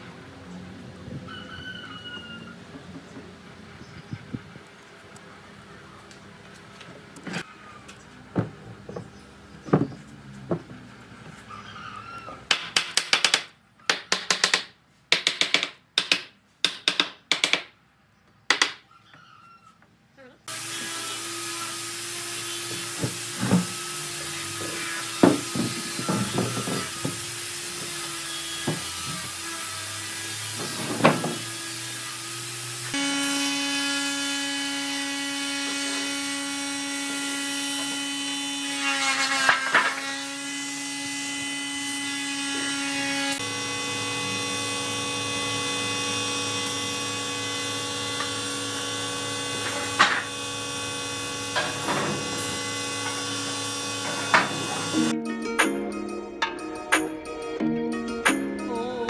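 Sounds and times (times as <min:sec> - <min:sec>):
woodworking power tools humming: 0:20.4 - 0:55.2.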